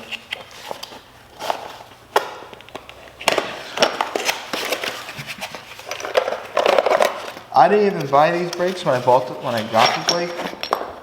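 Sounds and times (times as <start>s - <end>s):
packaging rustling: 0.3s - 10.6s
metal parts clicking and knocking: 5.8s - 7.4s, 9.6s - 11.0s.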